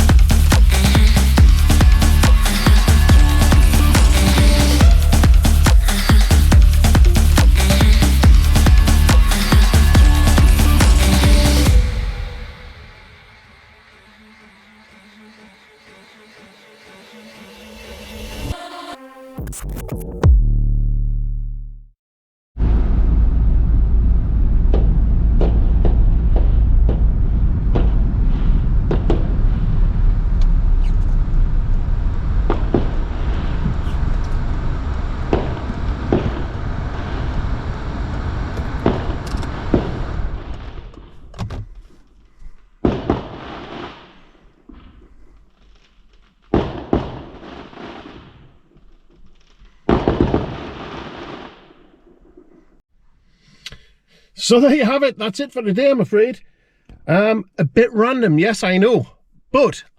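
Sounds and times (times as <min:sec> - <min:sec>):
heavy low rumble: 0:00.0 - 0:14.4, 0:22.6 - 0:41.3
fireworks crackling bangs: 0:00.0 - 0:14.8, 0:22.6 - 0:52.8
single firework bangs: 0:27.7 - 0:29.5, 0:42.8 - 0:45.0, 0:46.4 - 0:48.7, 0:49.3 - 0:52.2.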